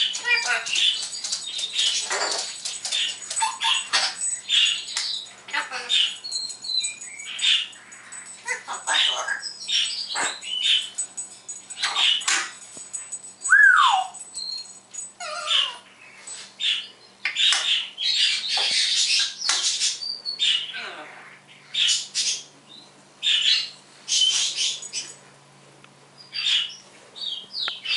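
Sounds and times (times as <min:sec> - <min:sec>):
parrot squawking and whistling: 0:13.5 - 0:14.6.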